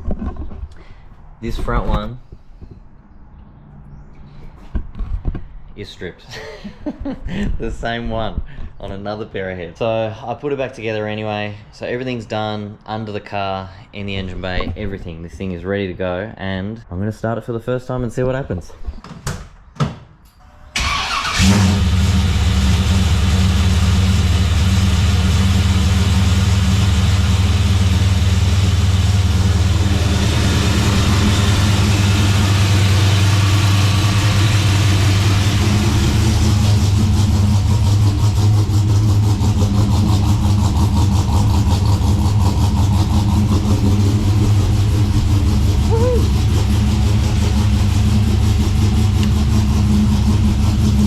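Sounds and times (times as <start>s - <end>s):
engine cranking and starting: 20.5s - 23.7s
engine idling: 20.7s - 51.0s.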